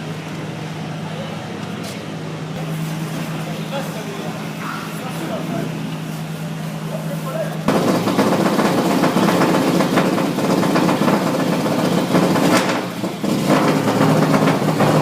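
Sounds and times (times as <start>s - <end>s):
loud rally car engine: 0.0s - 15.0s.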